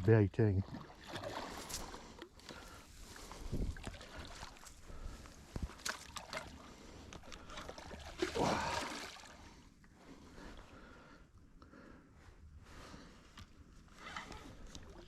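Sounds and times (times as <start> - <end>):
water sloshing and splashing: 0.0 - 9.6, 13.9 - 15.0.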